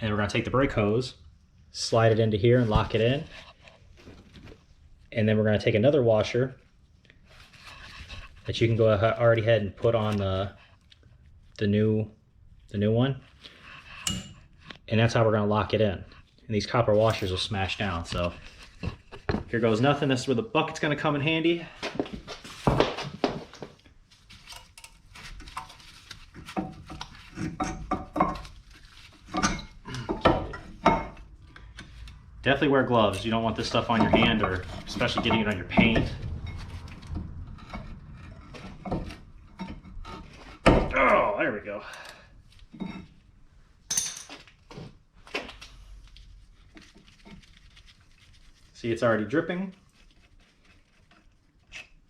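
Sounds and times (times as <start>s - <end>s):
metal tools clinking: 17.0s - 17.6s, 43.9s - 44.5s.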